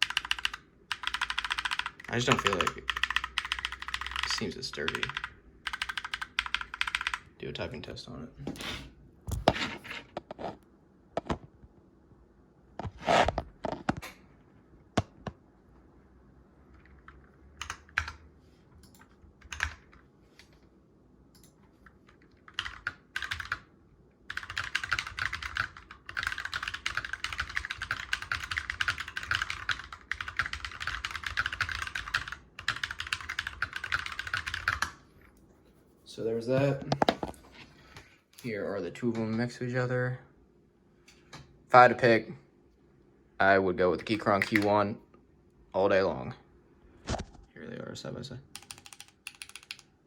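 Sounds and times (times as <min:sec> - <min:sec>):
mechanical keyboard typing: 0:00.0 - 0:07.3, 0:16.8 - 0:18.2, 0:18.8 - 0:20.0, 0:22.4 - 0:23.7, 0:24.3 - 0:35.0, 0:48.5 - 0:49.9.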